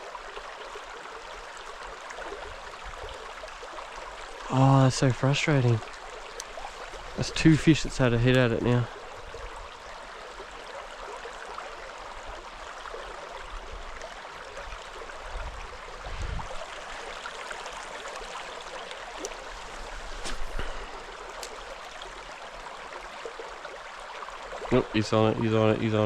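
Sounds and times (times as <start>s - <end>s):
stream water rushing: 0.0s - 26.0s
faint clicks: 5.7s - 6.6s, 18.8s - 21.9s.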